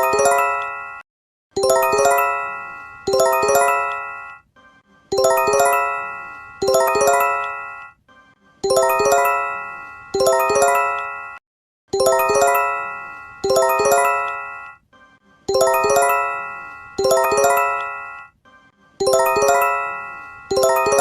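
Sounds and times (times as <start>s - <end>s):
electronic bell-like alert chime: 1.6s - 4.4s, 5.2s - 7.9s, 8.7s - 11.4s, 12.0s - 14.7s, 15.5s - 18.3s, 19.0s - 21.0s.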